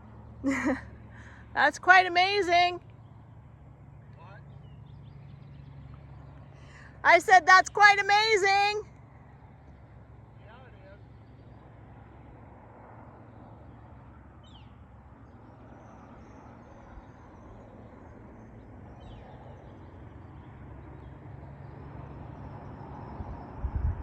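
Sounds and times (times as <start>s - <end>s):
steady low rumble: 23.2s - 24.0s.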